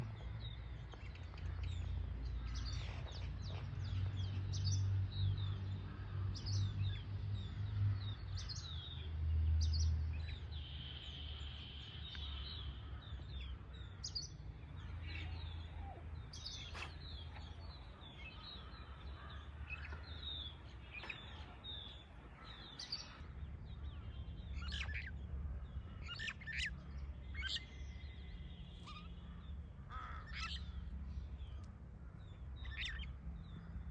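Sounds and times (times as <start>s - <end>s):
small songbirds chirping: 0.0s - 33.9s
bird trill: 25.9s - 30.9s.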